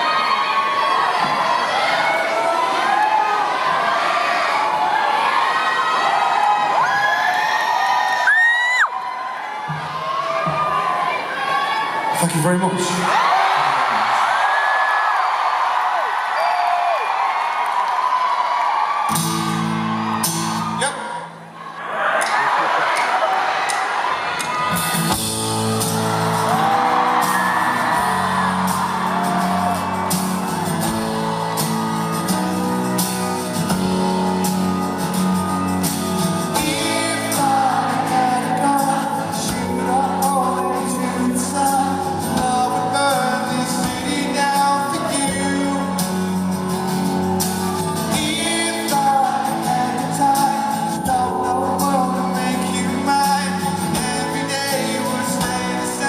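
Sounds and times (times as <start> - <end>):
audience shouting and whooping: 0.0 - 53.8
rock band playing live: 19.1 - 21.5, 24.6 - 56.0
male lead vocal: 36.4 - 56.0.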